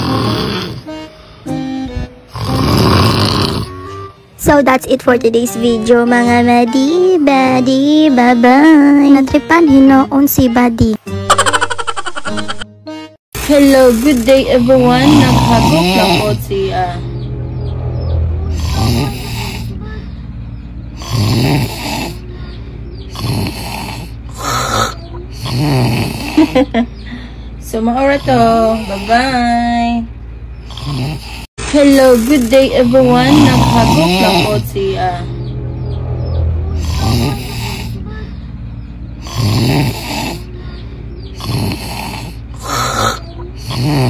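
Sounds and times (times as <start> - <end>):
person snoring loudly: 0.0 - 1.1, 2.0 - 3.9, 13.6 - 16.5, 18.3 - 19.8, 21.0 - 22.3, 23.1 - 26.7, 30.6 - 34.7, 36.7 - 38.0, 39.2 - 40.5, 41.4 - 44.0
low background hum: 13.4 - 44.0.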